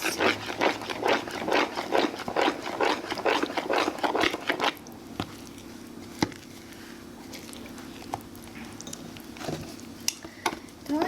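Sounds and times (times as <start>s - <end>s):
spoon mixing thick batter: 0.0s - 5.7s.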